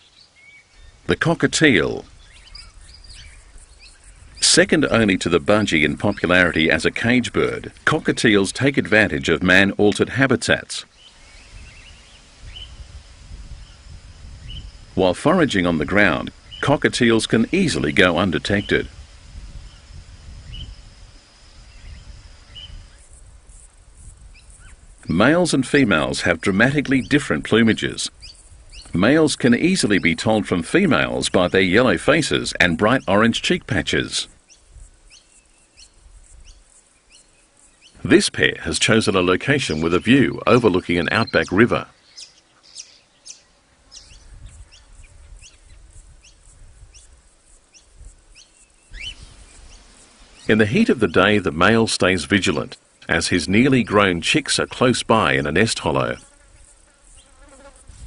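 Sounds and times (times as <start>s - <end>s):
faint bird chirps: 0.0s - 1.2s, 1.9s - 7.9s, 10.9s - 19.0s, 19.6s - 23.3s, 34.4s - 38.1s, 39.5s - 51.2s
high insect drone: 0.0s - 58.0s
high bird chirps: 2.1s - 4.6s, 10.9s - 12.9s, 21.6s - 23.1s, 47.7s - 50.6s.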